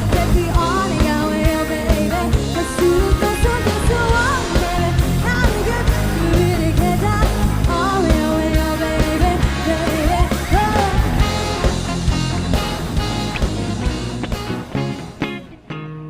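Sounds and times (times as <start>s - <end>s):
live pop band playing: 0.0s - 16.0s
sliding melody line: 0.2s - 15.6s.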